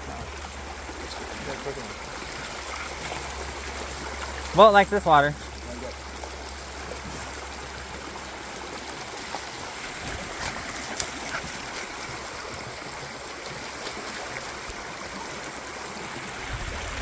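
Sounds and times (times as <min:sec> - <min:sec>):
stream rushing: 0:00.0 - 0:17.0.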